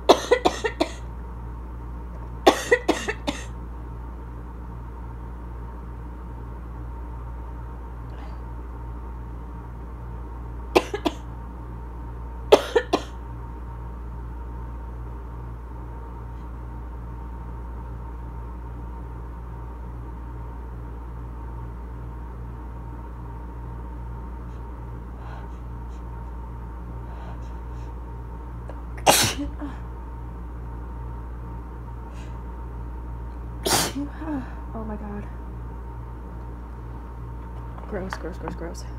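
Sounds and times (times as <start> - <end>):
steady low hum: 0.0 - 38.9
person coughing: 0.1 - 1.1, 2.5 - 3.5, 10.8 - 11.2, 12.5 - 13.2, 29.0 - 29.8, 33.6 - 34.2.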